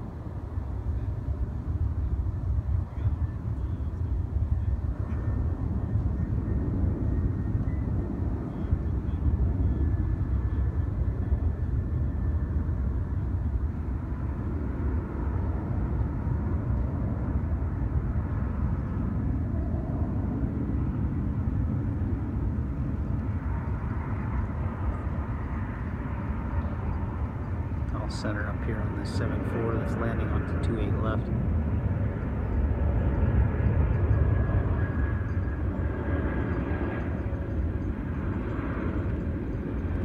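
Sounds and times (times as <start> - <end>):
distant jet airliners rumbling: 0.0 - 40.0.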